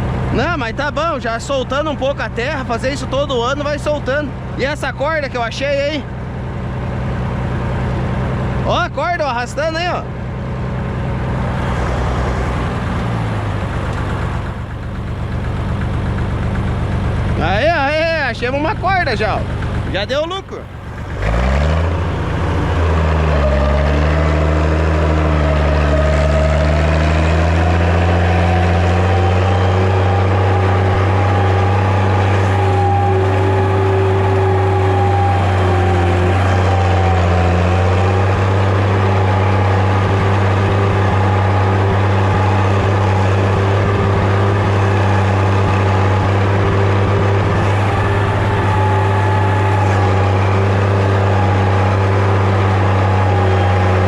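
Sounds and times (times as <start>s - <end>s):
tractor diesel engine under load: 0.0s - 54.0s.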